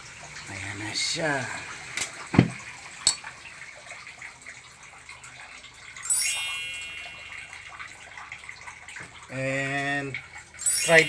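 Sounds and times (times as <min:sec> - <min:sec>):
bright ringing ding: 0:06.1 - 0:08.0, 0:10.6 - 0:11.0.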